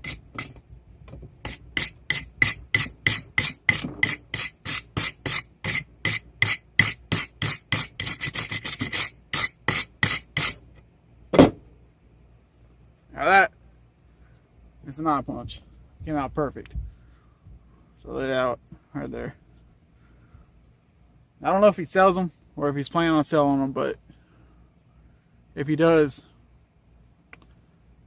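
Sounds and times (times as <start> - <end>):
wire brush scrubbing metal: 0.0 - 0.6, 1.4 - 10.6
sharp knock: 11.3 - 11.7.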